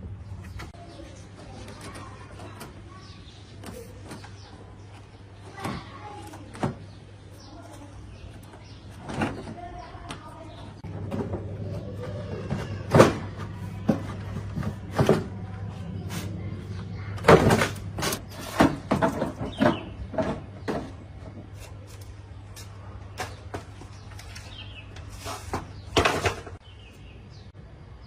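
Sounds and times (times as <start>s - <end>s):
tools and parts clattering: 8.3s - 9.7s, 17.1s - 22.2s, 23.2s - 26.6s.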